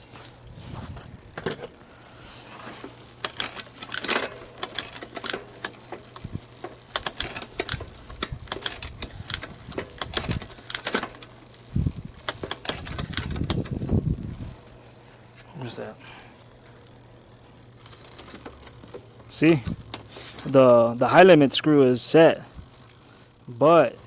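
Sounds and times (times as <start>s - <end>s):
bicycle shifter clicks and rattles: 0.2s - 15.4s, 16.3s - 21.0s.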